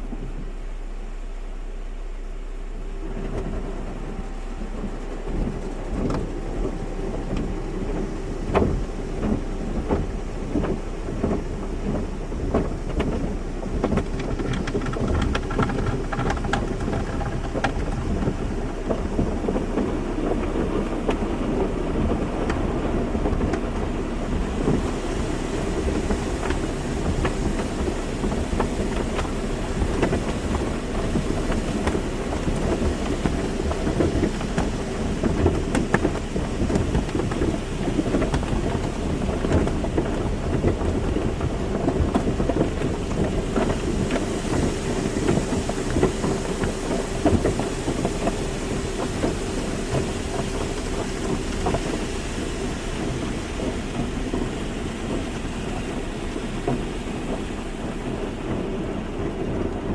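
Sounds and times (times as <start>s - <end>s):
faint machinery hum: 0.0s - 59.9s
low rumble: 0.0s - 59.9s
water spraying on a car: 0.0s - 59.9s.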